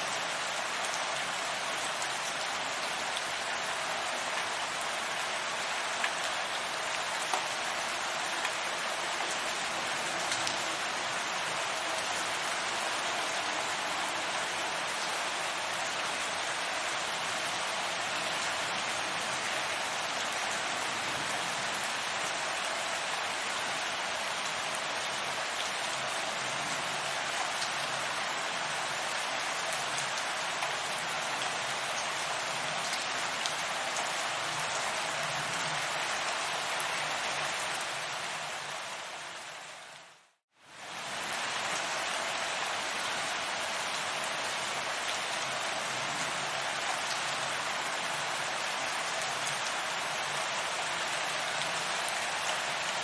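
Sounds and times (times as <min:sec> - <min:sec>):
steady rain hiss: 0:00.0 - 0:53.0
faint raindrop ticks: 0:07.2 - 0:07.5, 0:10.2 - 0:10.6.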